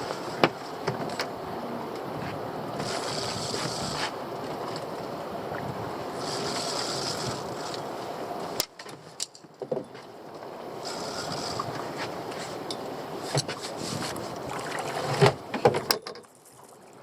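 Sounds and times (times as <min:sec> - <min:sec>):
water sounds around boat: 0:00.0 - 0:17.0
wind buffeting microphone: 0:01.3 - 0:06.4.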